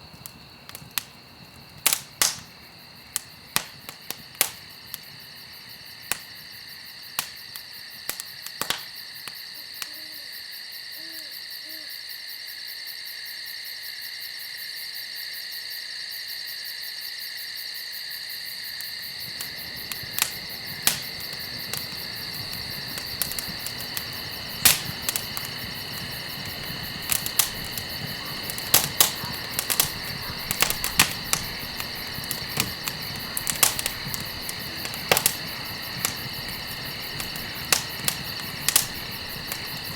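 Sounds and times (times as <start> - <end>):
campfire crackling with pops: 0.0 - 10.2, 18.4 - 39.9
hiss of burning: 0.0 - 10.2, 18.3 - 39.9
crickets chirping: 0.0 - 39.9
owl hooting faintly: 9.5 - 12.0, 19.3 - 39.9.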